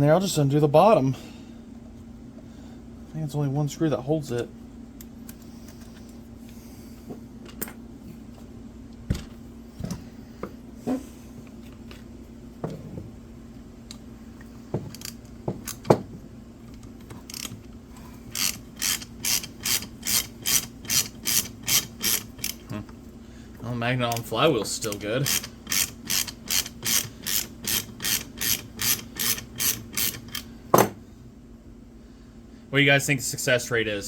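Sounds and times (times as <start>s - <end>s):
faint steady hum: 0.0s - 34.0s
ratcheting clicks: 17.3s - 17.6s, 18.3s - 22.6s, 24.1s - 30.4s.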